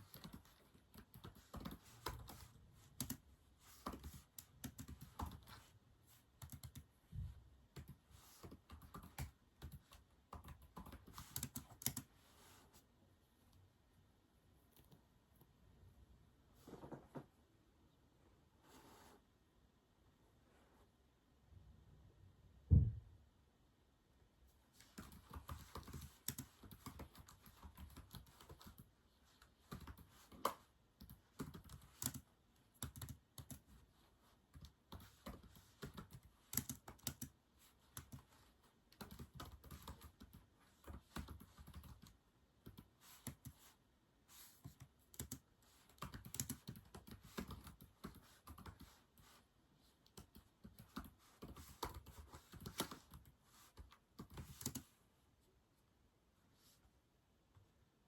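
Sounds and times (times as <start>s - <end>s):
typing on a keyboard: 0.0s - 5.6s, 6.4s - 6.9s, 7.7s - 12.1s, 24.8s - 28.9s, 29.6s - 33.8s, 34.5s - 38.3s, 38.9s - 43.6s, 44.6s - 49.0s, 50.0s - 54.9s.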